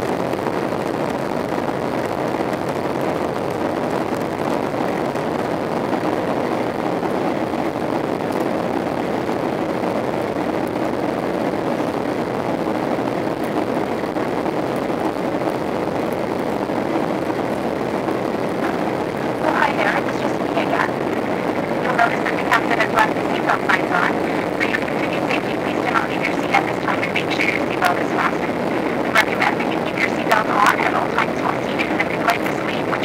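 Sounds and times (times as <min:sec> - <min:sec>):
airliner cabin engine roar: 0:15.4 - 0:33.0
air rushing over fuselage: 0:16.9 - 0:33.0.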